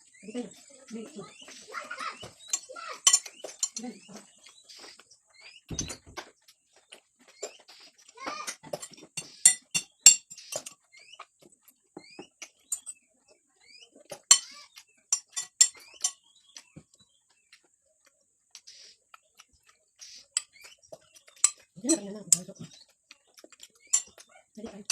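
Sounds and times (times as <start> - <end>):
cutlery clinking on a plate: 2.5 - 3.8, 8.6 - 10.8, 14.1 - 16.2, 23.9 - 24.2.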